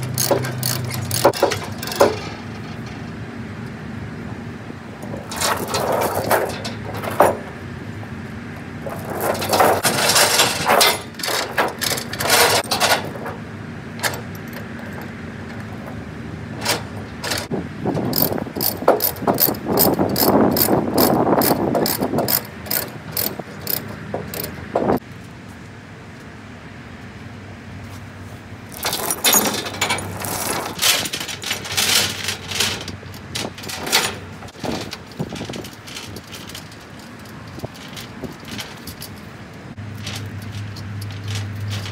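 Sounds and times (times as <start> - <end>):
ratchet strap clicking: 0.0 - 2.0, 18.1 - 24.6.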